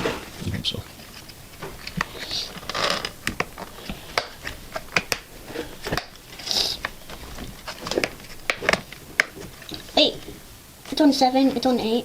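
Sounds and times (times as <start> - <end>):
hard plastic clicks and taps: 3.1 - 6.2.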